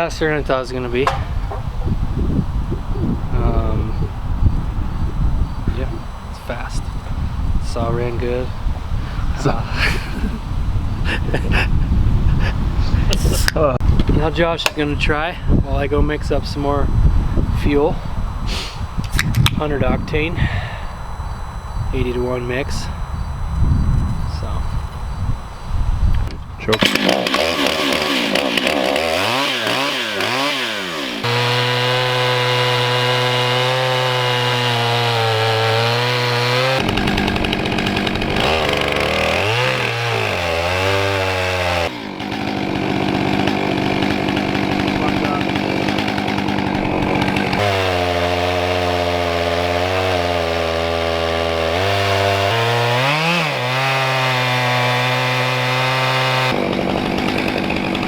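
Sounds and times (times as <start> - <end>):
chainsaw revving: 26.7 - 58.0.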